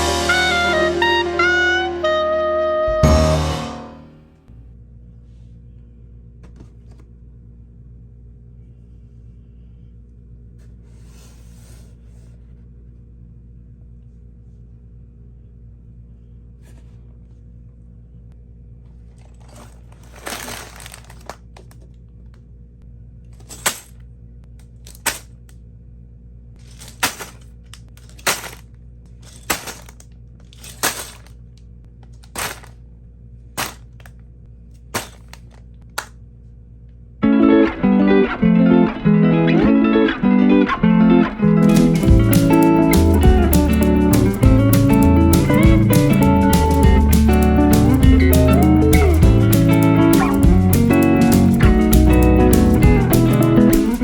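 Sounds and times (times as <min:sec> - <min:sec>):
plastic packaging crinkling and tearing: 0:19.2 - 0:21.8, 0:32.2 - 0:32.7.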